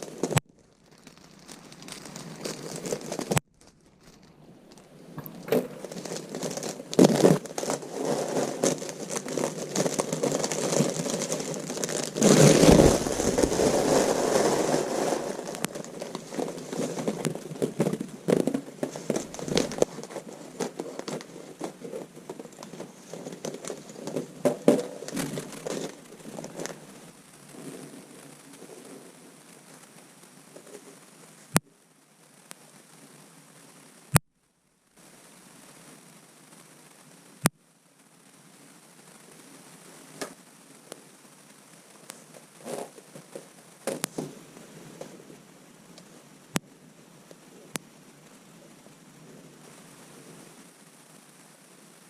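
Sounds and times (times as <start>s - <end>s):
packaging crinkling and rustling: 0.0s - 29.8s.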